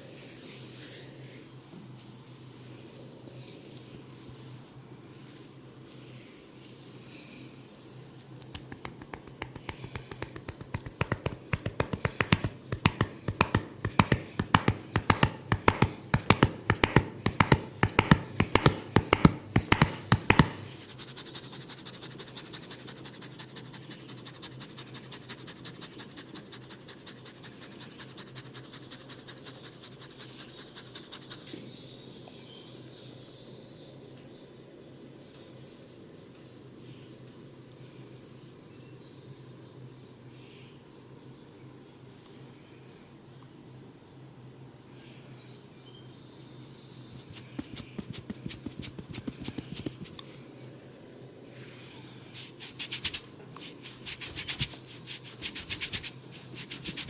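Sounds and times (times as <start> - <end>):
fingertips scratching hair and scalp: 7.7 - 31.6, 47.1 - 50.3, 52.4 - 57.0
hands tapping on a head: 8.4 - 20.7, 47.2 - 50.2.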